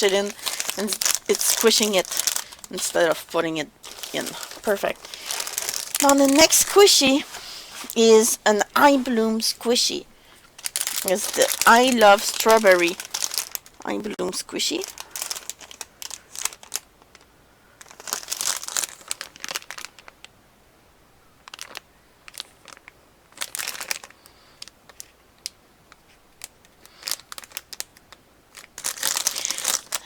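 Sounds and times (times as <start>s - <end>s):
crinkly plastic packaging rustling: 0.0s - 20.3s, 21.4s - 30.0s.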